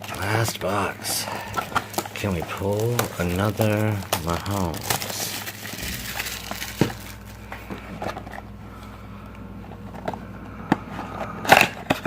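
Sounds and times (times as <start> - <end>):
rustling cardboard and foil packaging: 0.0 - 9.0.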